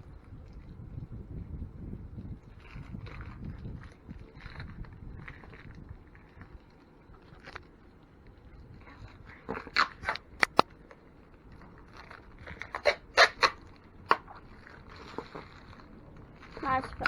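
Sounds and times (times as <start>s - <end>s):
plastic film peeling with crackles: 9.8s - 17.0s.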